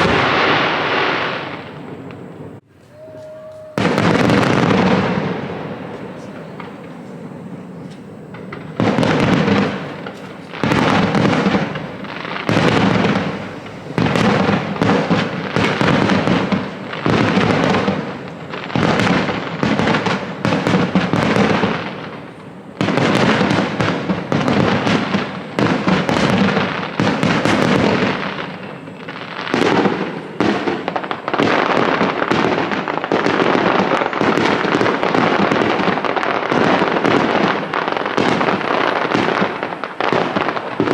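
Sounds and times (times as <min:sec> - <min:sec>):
fireworks shells bursting: 0:00.0 - 0:40.9.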